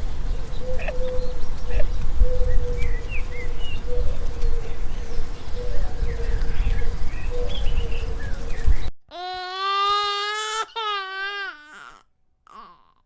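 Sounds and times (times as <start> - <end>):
birds chirping: 0.0 - 8.9.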